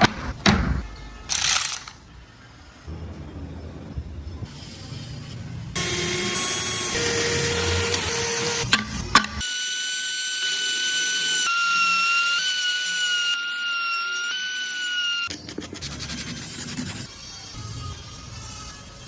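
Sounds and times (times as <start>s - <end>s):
rotary tool whining on wood: 9.4s - 15.3s.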